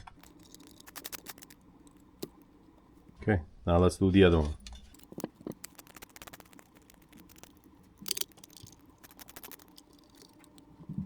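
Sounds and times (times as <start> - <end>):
small plastic clicks and taps: 5.0 - 11.0.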